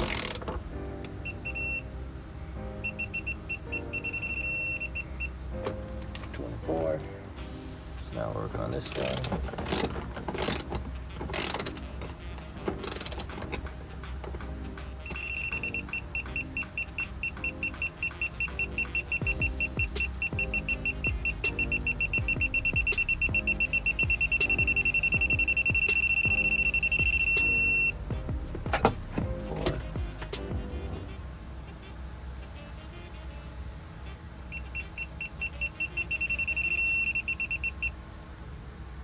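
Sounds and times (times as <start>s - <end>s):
ratchet clicking: 0.0s - 0.6s
torque wrench beeping: 0.0s - 0.6s, 1.2s - 1.9s, 2.8s - 5.4s, 15.0s - 31.0s, 34.5s - 38.0s.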